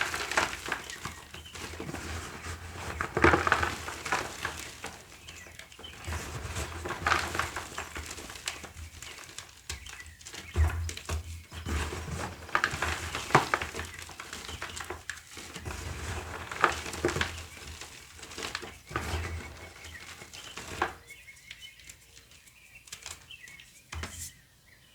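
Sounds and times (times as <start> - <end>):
hands crushing brittle block: 0.0 - 21.2
faint bird chirps: 19.8 - 24.9.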